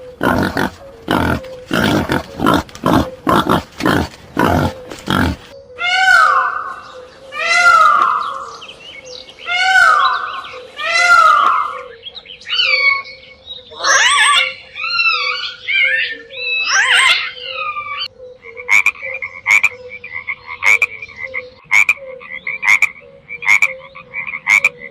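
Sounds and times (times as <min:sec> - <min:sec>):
animal harsh squeals: 0:00.0 - 0:05.5
animal sliding pitched calls: 0:00.0 - 0:05.5.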